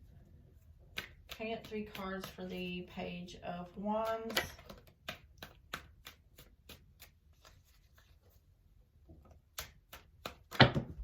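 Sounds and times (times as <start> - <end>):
cards slapping: 0.8 - 2.7, 4.0 - 8.2, 9.3 - 11.0
cards shuffled by hand: 4.0 - 8.4.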